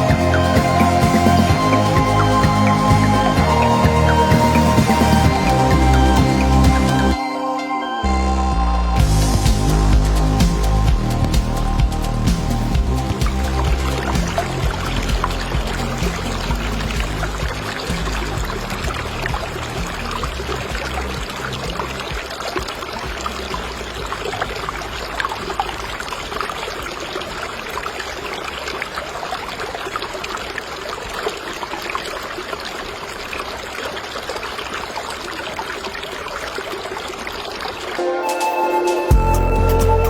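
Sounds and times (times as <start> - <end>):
music: 0.0 - 22.2, 38.0 - 40.0
water trickling and splashing: 9.0 - 38.2.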